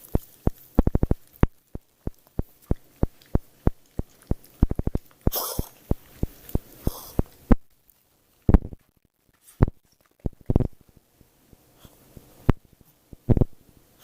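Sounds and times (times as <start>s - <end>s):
pet coughing: 5.3s - 5.8s, 6.8s - 7.3s.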